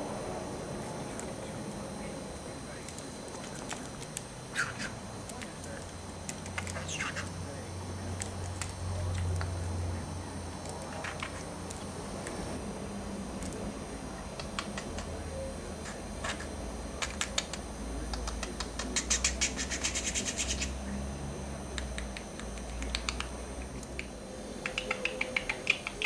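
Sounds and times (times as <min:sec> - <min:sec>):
budgerigar taps and clicks: 0:02.9 - 0:07.4, 0:10.6 - 0:12.4, 0:14.3 - 0:15.2, 0:15.8 - 0:20.7, 0:21.7 - 0:26.0
budgerigar chirps: 0:06.7 - 0:07.3, 0:19.0 - 0:20.8.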